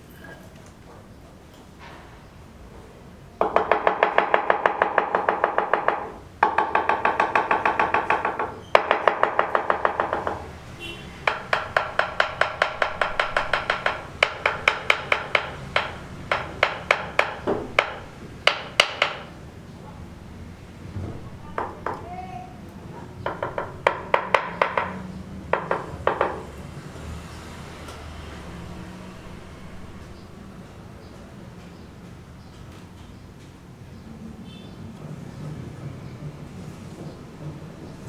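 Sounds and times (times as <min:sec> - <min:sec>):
hammering with ringing tone: 0:11.2 - 0:19.4, 0:23.2 - 0:26.5.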